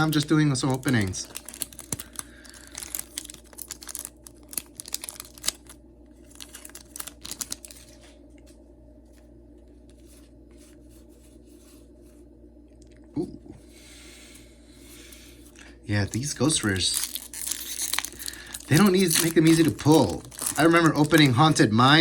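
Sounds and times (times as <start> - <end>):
foil wrapper tearing and crinkling: 0.0 - 8.1, 16.1 - 22.0
steady low hum: 0.0 - 22.0.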